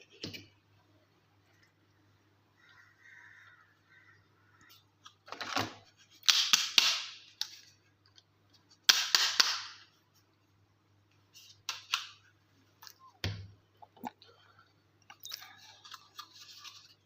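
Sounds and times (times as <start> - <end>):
low steady hum: 9.8 - 17.0.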